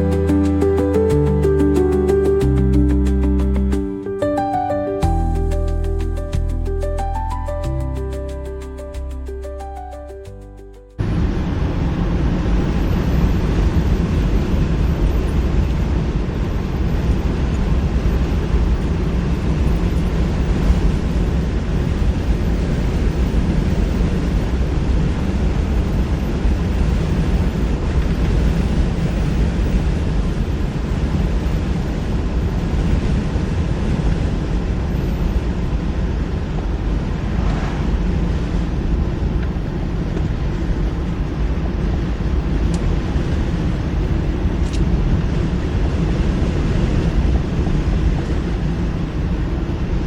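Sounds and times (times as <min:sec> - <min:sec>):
car driving road noise: 0:11.0 - 0:50.0.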